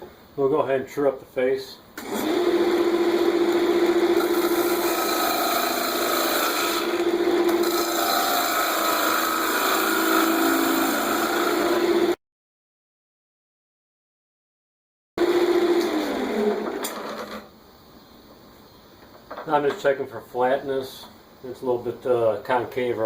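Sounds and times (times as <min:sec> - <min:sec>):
wood lathe humming: 0:02.0 - 0:12.2.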